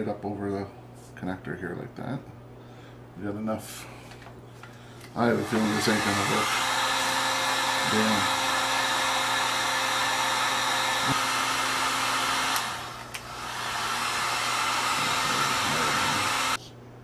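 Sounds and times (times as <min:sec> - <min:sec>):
heat gun blowing air: 0:05.2 - 0:16.6.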